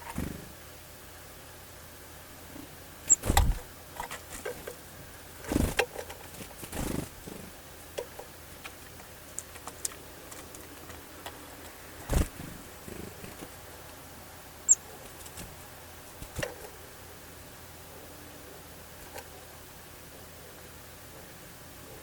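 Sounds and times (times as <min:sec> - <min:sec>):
birds pecking and tapping: 0:03.1 - 0:04.8, 0:05.4 - 0:14.0, 0:16.2 - 0:16.8
dull thumps: 0:03.2 - 0:03.7.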